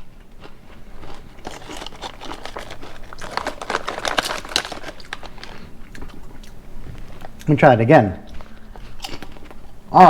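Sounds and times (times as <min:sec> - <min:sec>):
chip bag crinkling: 0:00.4 - 0:07.3.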